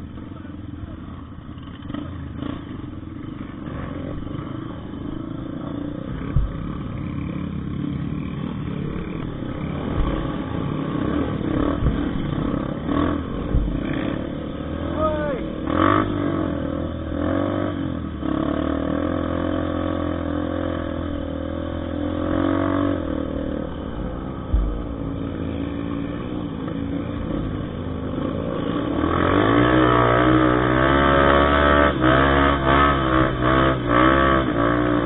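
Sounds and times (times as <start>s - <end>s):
motorcycle engine revving: 0.0s - 35.0s
low thump: 6.2s - 6.9s, 9.8s - 10.4s, 11.7s - 12.3s, 13.4s - 14.0s, 24.4s - 25.2s.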